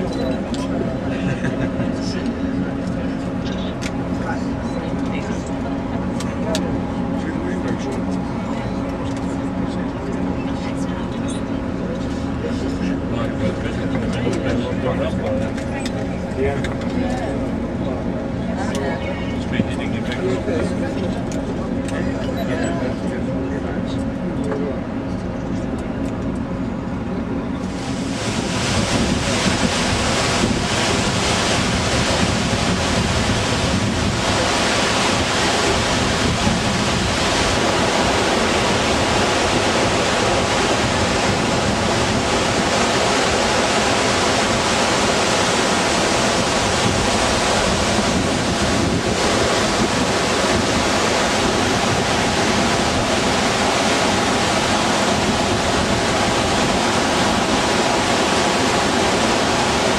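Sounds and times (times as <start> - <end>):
waterfall rushing: 27.6 - 59.9.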